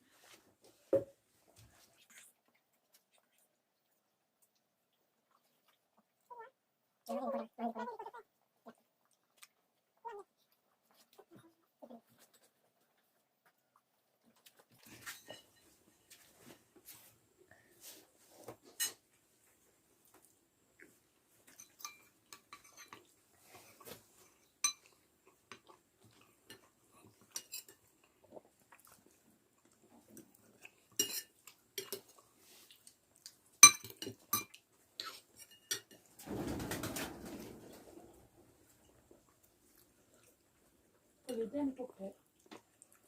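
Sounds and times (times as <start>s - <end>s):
cutlery clinking on a plate: 15.0s - 15.6s, 18.8s - 19.0s, 21.5s - 23.1s, 24.4s - 25.0s, 26.5s - 27.9s, 31.0s - 32.2s, 33.6s - 36.1s.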